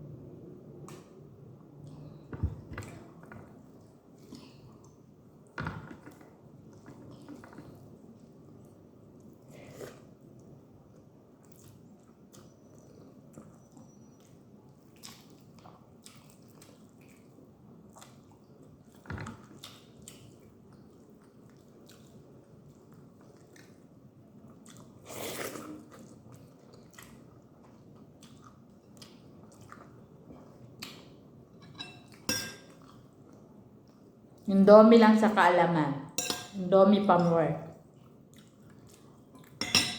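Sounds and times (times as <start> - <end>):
person chewing food: 6.7 - 23.8, 24.4 - 31.2, 32.1 - 34.1, 37.8 - 39.6.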